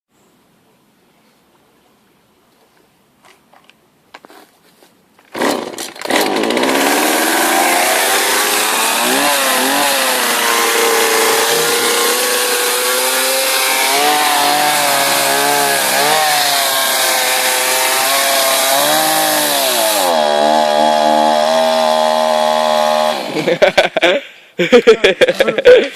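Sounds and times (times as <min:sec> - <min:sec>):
chainsaw engine running: 0:05.4 - 0:23.9.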